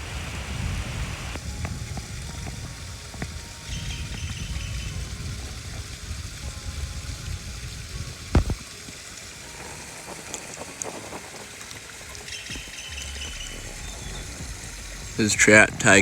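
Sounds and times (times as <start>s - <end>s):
water running over waterfall: 0.0s - 16.0s
sharp thump: 8.4s - 8.6s
low rumble: 12.6s - 16.0s.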